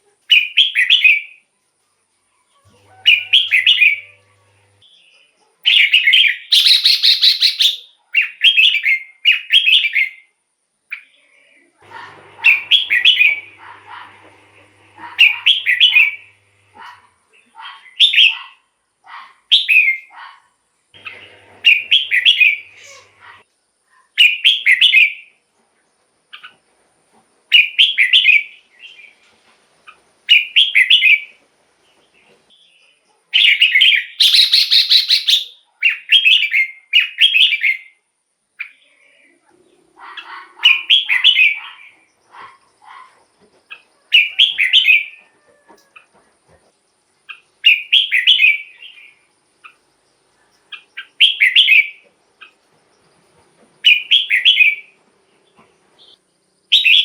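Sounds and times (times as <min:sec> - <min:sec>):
bird singing whistled phrases: 0:05.8 - 0:10.2, 0:33.4 - 0:37.9, 0:47.7 - 0:49.0, 0:51.0 - 0:52.0, 0:53.9 - 0:54.9, 0:56.0 - 0:57.0.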